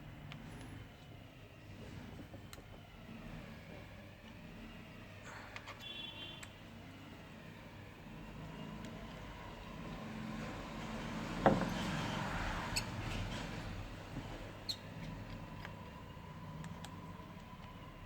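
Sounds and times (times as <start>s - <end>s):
screwdriver clicks and ticks: 16.6s - 18.0s.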